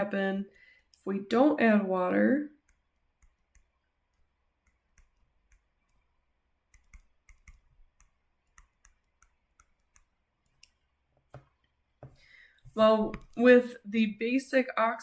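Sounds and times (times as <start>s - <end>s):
clicks and taps on a screen: 2.6s - 13.5s.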